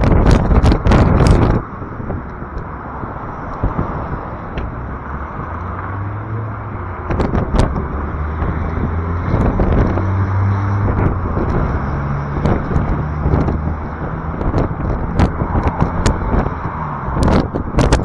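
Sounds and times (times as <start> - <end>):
road traffic: 0.0 - 18.0
wind buffeting microphone: 0.0 - 18.0.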